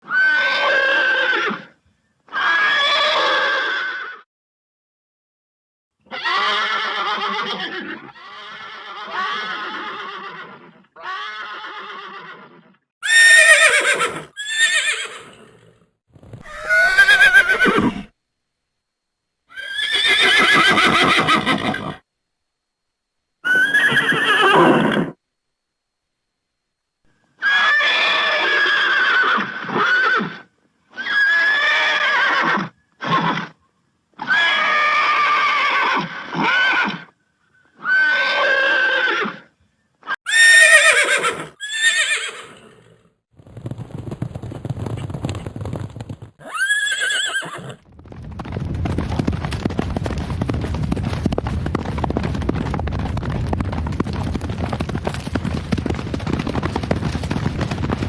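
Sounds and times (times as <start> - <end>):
horse whinnying: 0.0 - 4.2, 6.1 - 15.7, 16.4 - 18.1, 19.5 - 22.0, 23.4 - 25.2, 27.4 - 33.6, 34.2 - 37.1, 37.8 - 43.0, 46.4 - 47.9
hoofbeats galloping: 16.2 - 18.1, 43.4 - 58.0.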